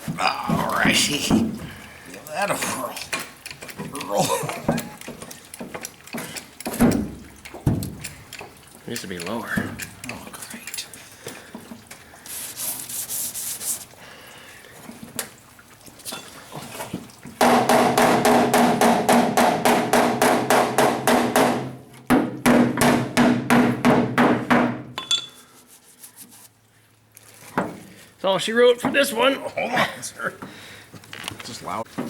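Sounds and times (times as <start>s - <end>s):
tapping on sheet metal: 17.4s - 25.1s.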